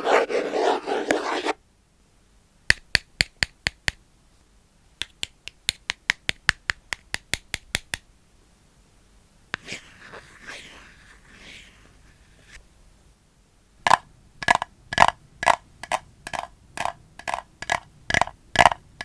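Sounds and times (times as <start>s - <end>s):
rustling rubbing noise: 0.0s - 1.6s, 9.6s - 12.6s.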